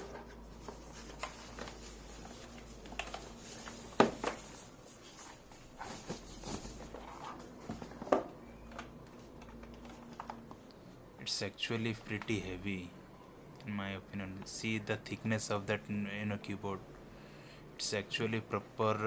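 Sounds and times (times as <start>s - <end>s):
keyboard packaging knocks and rustles: 2.5s - 4.5s.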